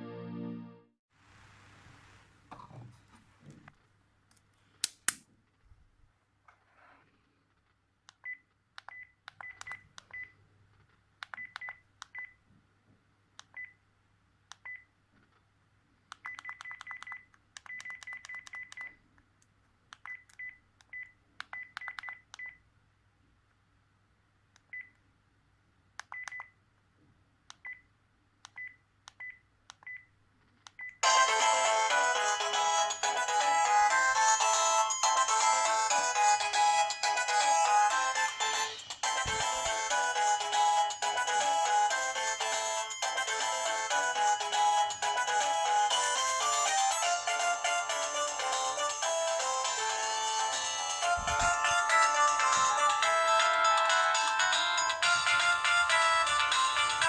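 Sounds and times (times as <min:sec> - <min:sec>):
phone ringtone: 0:31.0 - 0:57.0.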